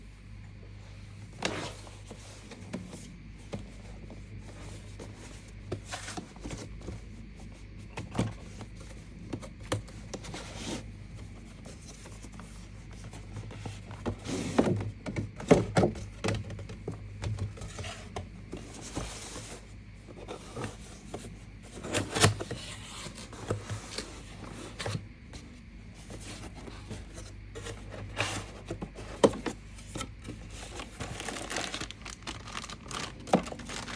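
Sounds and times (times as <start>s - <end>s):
cardboard packaging rubbing and scraping: 17.5s - 25.0s, 26.0s - 33.9s.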